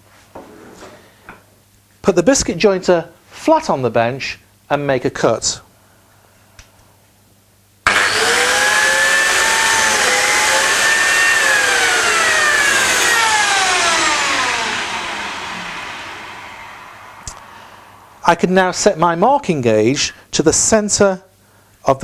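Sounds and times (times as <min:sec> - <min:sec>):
biscuit jointer whining: 0:07.8 - 0:18.0.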